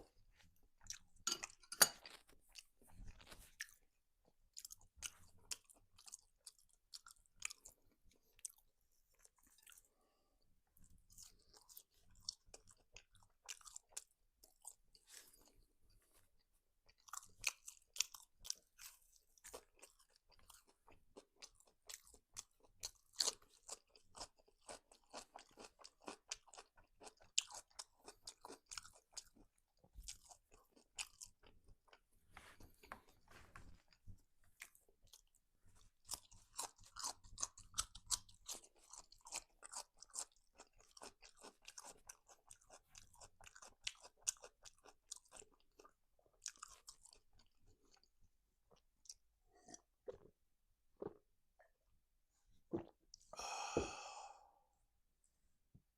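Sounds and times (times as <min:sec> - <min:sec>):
mouth chewing and crunching food: 0:00.0 - 0:10.1, 0:10.7 - 0:50.4, 0:51.0 - 0:51.8, 0:52.7 - 0:53.5.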